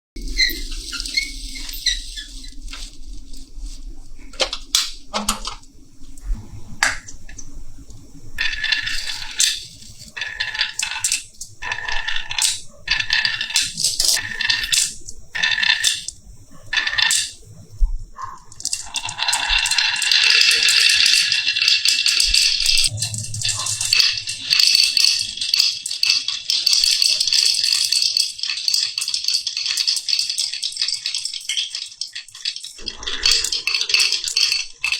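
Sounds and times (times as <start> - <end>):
marbles rattling down a marble run: 8.4 - 16.1, 16.7 - 17.4, 18.5 - 34.9.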